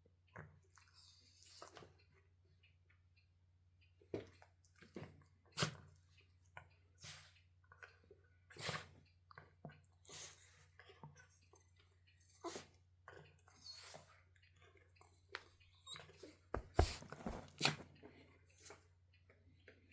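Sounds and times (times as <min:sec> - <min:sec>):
soft bump: 0:16.6 - 0:17.8
dog sniffing: 0:16.6 - 0:17.9
rustling: 0:16.6 - 0:17.9.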